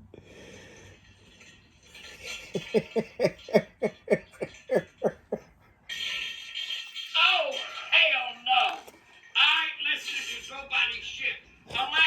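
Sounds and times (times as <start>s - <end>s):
person laughing hard: 2.2s - 5.5s.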